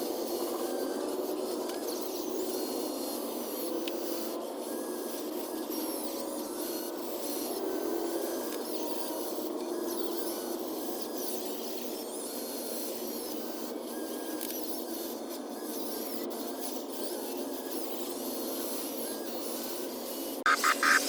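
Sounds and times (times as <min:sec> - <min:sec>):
small electric motors whirring: 0:00.1 - 0:21.0
short high whines: 0:20.5 - 0:21.0.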